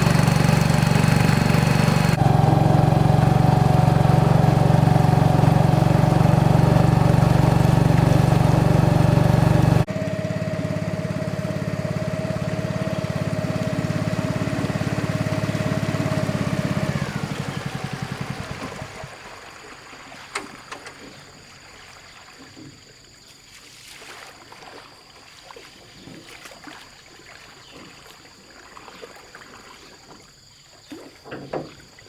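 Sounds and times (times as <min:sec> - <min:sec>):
water lapping against boat: 0:00.0 - 0:09.9, 0:11.1 - 0:32.0
small boat engine winding down: 0:00.0 - 0:21.7.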